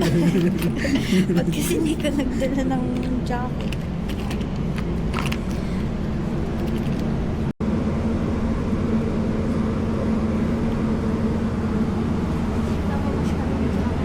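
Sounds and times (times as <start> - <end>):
low rumble of vehicle noise: 0.0 - 14.0
steady hum: 0.0 - 14.0.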